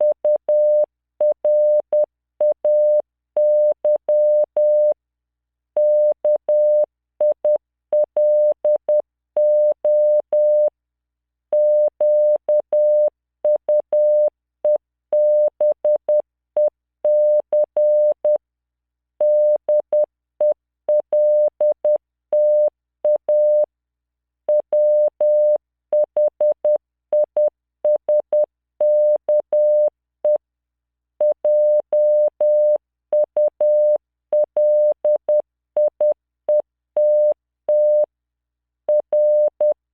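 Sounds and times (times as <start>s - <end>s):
morse code beeps: 21.1s - 22.7s, 23.3s - 23.6s, 28.1s - 29.9s, 31.5s - 34.0s, 34.6s - 36.1s, 37.0s - 38.1s, 38.9s - 39.8s.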